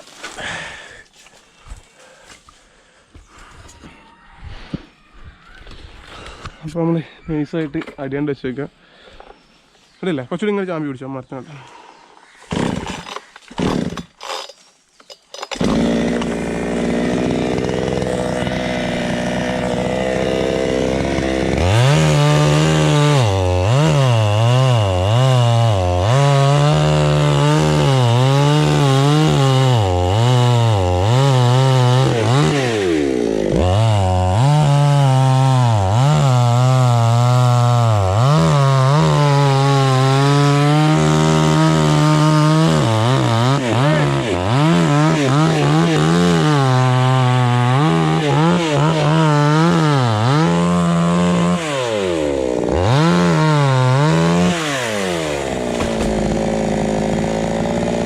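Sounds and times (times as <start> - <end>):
chainsaw cutting palm trunk: 12.5 - 58.0.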